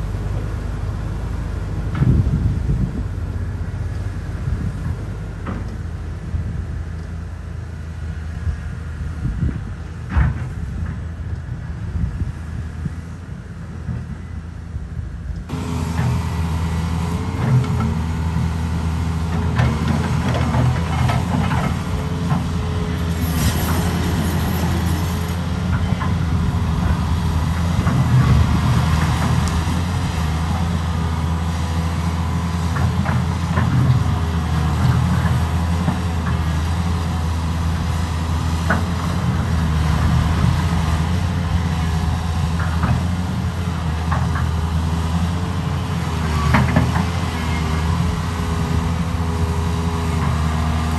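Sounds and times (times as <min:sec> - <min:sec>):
diesel machinery engine running: 0:00.0 - 0:50.9.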